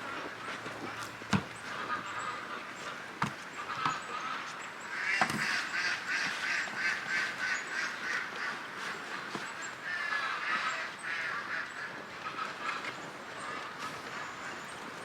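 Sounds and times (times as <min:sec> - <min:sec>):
ducks quacking: 0:00.8 - 0:08.7.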